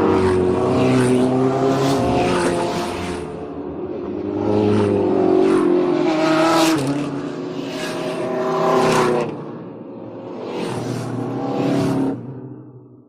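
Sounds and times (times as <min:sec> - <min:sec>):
cars passing by: 0:00.0 - 0:13.0.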